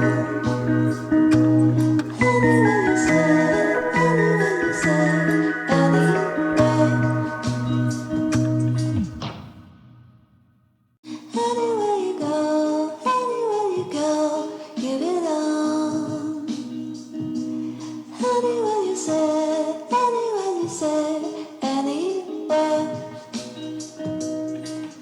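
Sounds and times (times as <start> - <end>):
song with singing: 0.0 - 9.3, 11.1 - 25.0.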